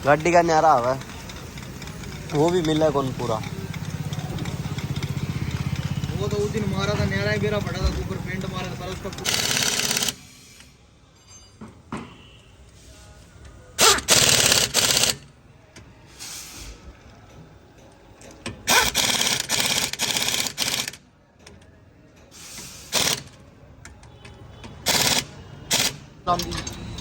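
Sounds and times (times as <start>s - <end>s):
pneumatic impact wrench rattling: 0.0s - 10.8s, 13.8s - 15.3s, 18.2s - 21.0s, 22.3s - 23.4s, 24.7s - 27.0s.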